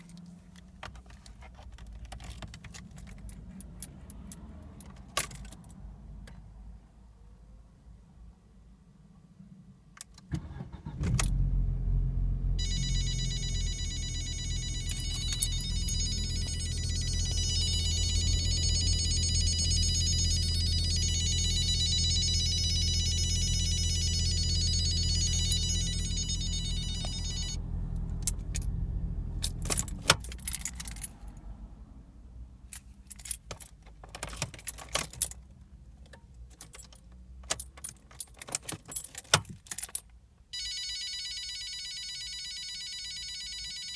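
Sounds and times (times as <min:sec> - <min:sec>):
car engine idling: 0:10.4 - 0:30.6
high-pitched electronic warning tone: 0:12.6 - 0:27.6.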